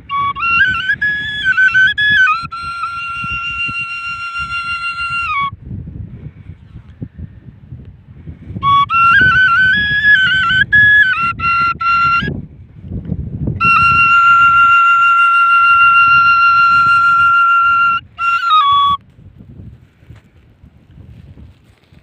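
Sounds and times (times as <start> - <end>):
flute playing: 0.0 - 5.6, 8.5 - 12.4, 13.6 - 19.0.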